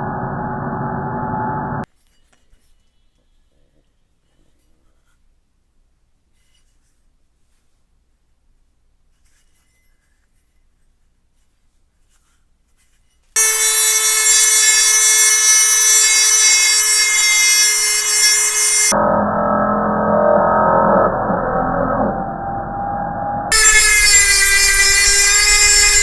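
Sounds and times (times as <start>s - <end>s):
power tool grinding steel: 13.4s - 19.0s, 23.5s - 26.0s.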